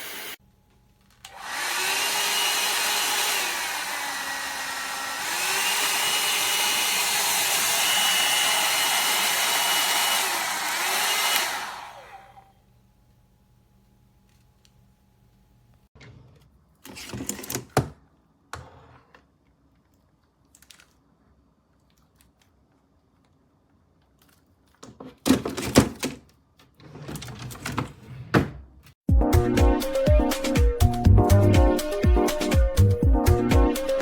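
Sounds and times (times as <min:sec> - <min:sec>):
music with steady beat: 0:29.1 - 0:34.0.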